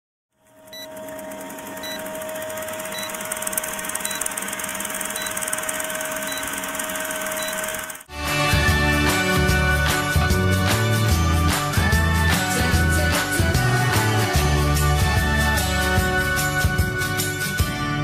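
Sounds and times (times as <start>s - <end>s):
boat engine humming: 0.4s - 8.1s.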